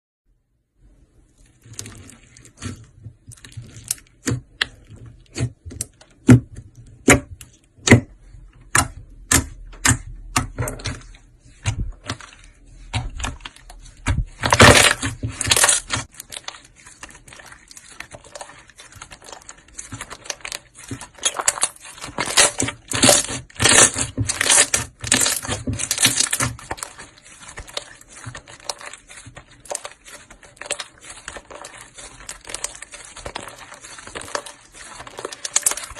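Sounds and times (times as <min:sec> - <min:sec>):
slime crackling: 0:09.4 - 0:35.9.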